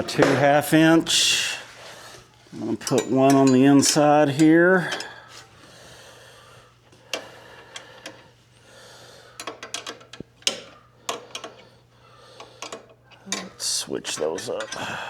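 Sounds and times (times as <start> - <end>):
metal hand tools clinking: 2.6 - 5.3
socket wrench clicking: 9.4 - 11.7, 12.4 - 13.6.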